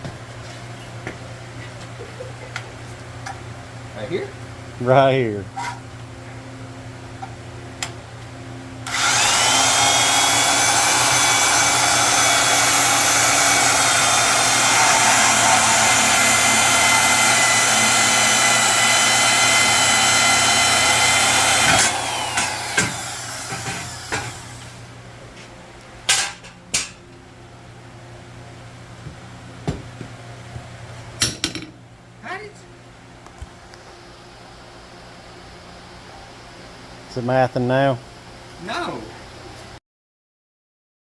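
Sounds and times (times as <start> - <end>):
power cutting tool whining: 8.8 - 24.9
knocks: 29.6 - 30.1.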